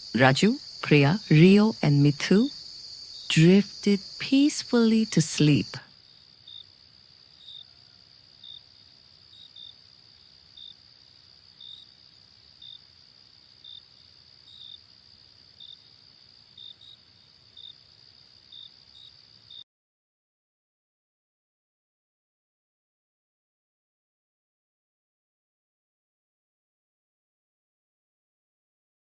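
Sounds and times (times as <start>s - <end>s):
crickets trilling: 0.0s - 19.6s.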